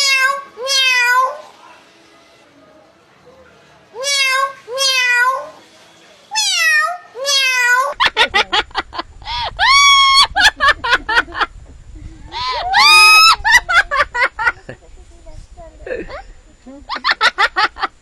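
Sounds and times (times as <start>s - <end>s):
cat meowing: 0.0s - 1.5s, 4.0s - 5.6s, 6.4s - 7.9s.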